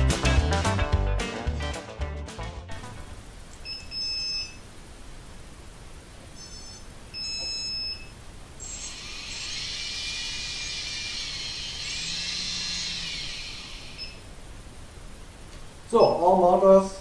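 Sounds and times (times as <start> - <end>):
short electronic beeps: 3.6 - 4.6, 6.4 - 8.2, 14.0 - 14.3
drone motors whining: 6.2 - 15.4.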